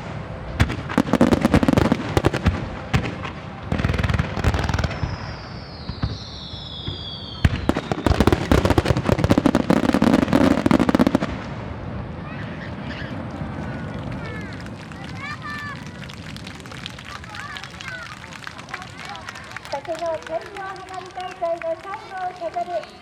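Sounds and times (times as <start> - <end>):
fireworks bursting in volleys: 0.0 - 23.0
falling firework whistle: 4.4 - 9.0.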